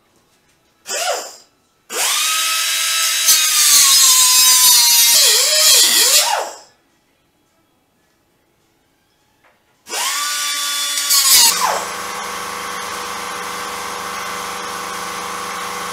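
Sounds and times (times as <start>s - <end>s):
power tool motor whine: 0.9s - 6.6s, 9.9s - 15.9s.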